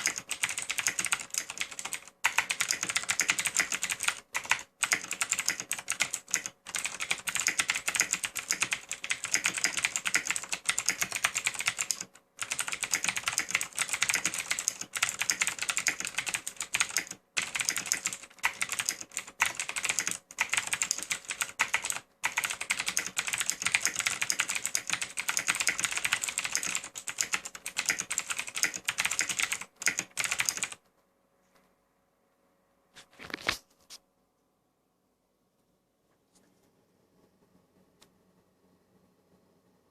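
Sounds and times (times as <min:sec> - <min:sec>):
mechanical keyboard typing clicks: 0:00.0 - 0:30.8.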